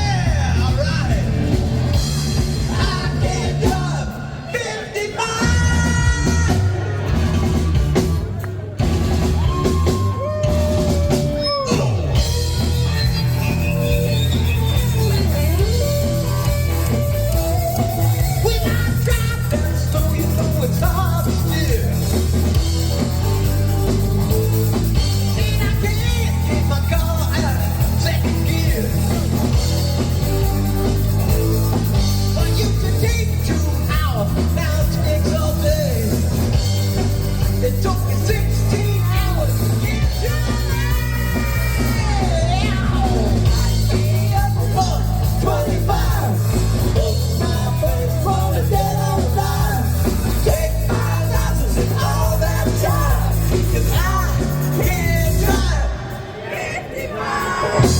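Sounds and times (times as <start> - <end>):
electric guitar: 5.4 - 56.2
person singing: 37.4 - 57.9.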